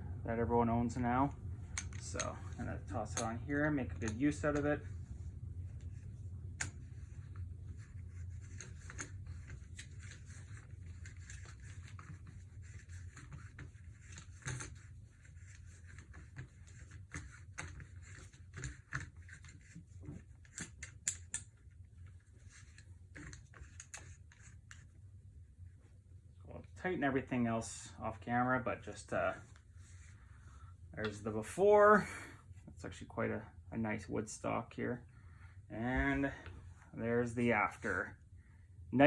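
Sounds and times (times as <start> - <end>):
low steady hum: 0.0 - 39.0
handling clicks taps and scrapes: 1.6 - 5.1, 5.7 - 25.0.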